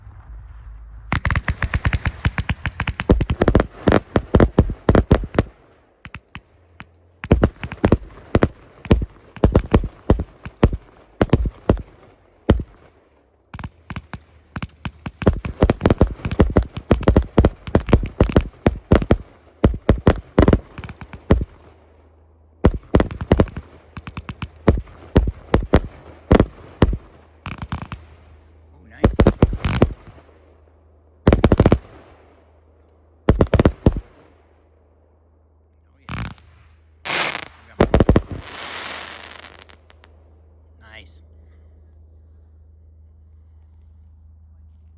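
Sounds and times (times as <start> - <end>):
firework cake shots and bangs: 0.1 - 21.8, 22.6 - 30.5, 31.3 - 32.4, 33.3 - 34.3, 36.0 - 40.1.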